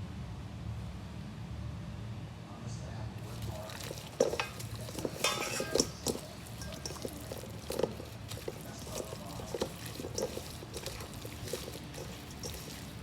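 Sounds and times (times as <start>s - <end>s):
wet meat squishing: 3.2s - 13.0s.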